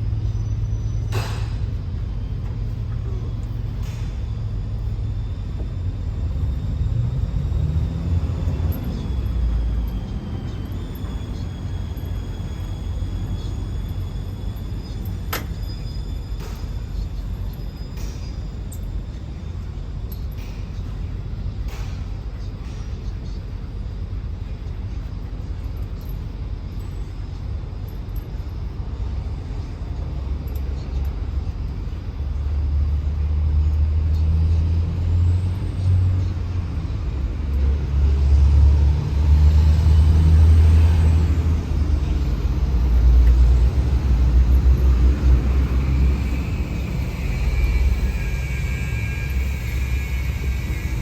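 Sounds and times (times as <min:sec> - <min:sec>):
truck engine rumbling: 0:00.0 - 0:51.0.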